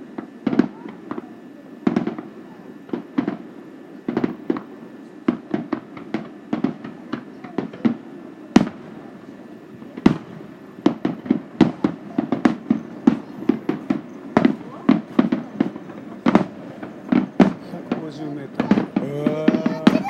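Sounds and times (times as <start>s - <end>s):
fireworks bangs and booms: 0.0s - 20.0s.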